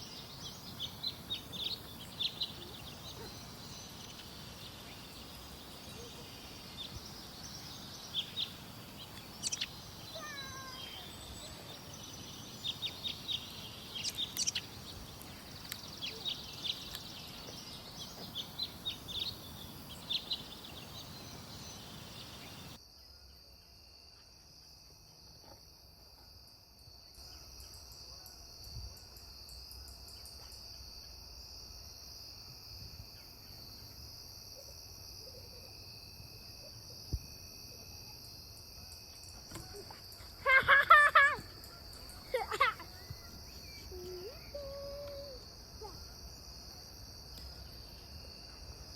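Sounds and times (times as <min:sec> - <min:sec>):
birds chirping: 0:00.0 - 0:22.8, 0:39.2 - 0:44.8
high-pitched insect trill: 0:00.0 - 0:22.9, 0:26.5 - 0:48.9.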